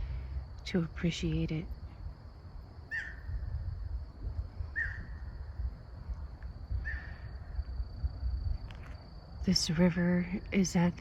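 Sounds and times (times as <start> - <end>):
low rumble: 0.0 - 11.0
bird calls: 2.9 - 3.3, 4.8 - 5.2.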